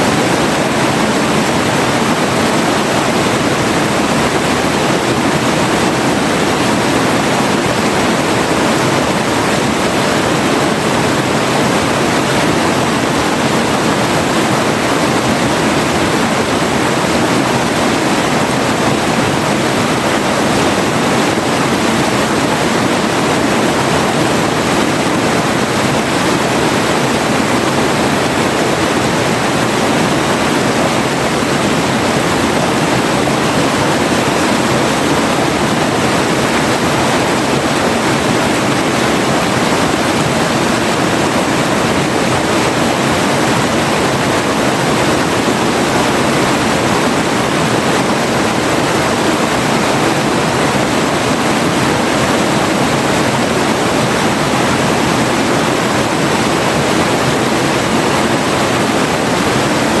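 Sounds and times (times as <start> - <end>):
river water flowing: 0.0 - 60.0.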